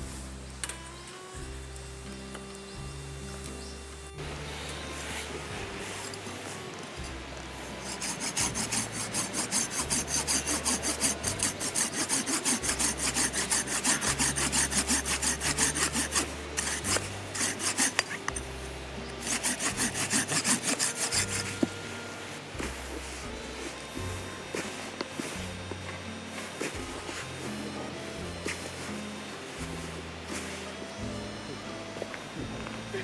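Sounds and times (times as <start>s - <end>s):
hand saw cutting wood: 4.2s - 25.5s, 26.3s - 30.7s.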